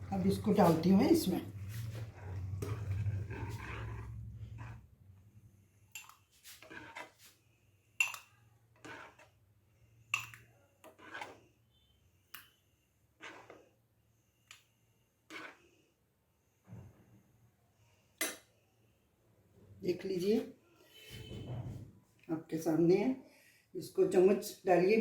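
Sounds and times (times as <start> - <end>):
spoon scraping a pan: 0.1 - 4.9, 5.9 - 7.4, 8.0 - 9.4, 10.0 - 11.6, 13.2 - 13.7, 15.3 - 15.8.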